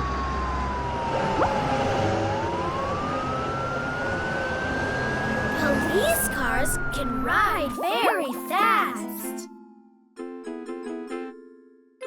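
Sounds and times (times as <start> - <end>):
police siren wailing: 0.0 - 7.2.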